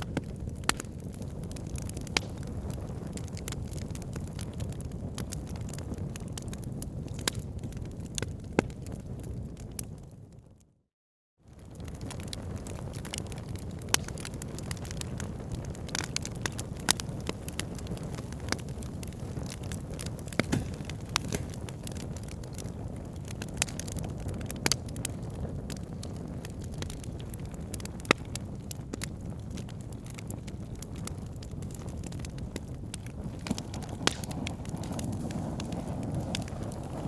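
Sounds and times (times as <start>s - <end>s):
fire crackles and pops: 0.0s - 10.7s, 11.4s - 37.0s
fire low rush: 32.9s - 37.0s.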